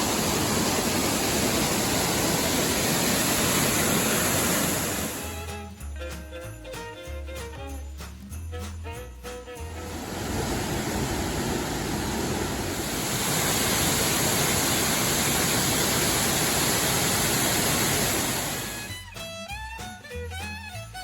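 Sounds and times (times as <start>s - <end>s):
waterfall rushing: 0.0s - 5.4s, 9.8s - 18.9s.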